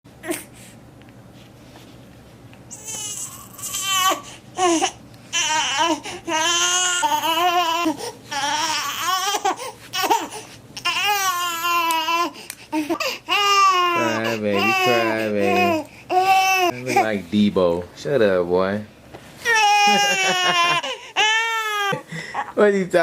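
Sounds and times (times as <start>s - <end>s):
baby crying: 2.7s - 17.1s, 19.4s - 22.6s.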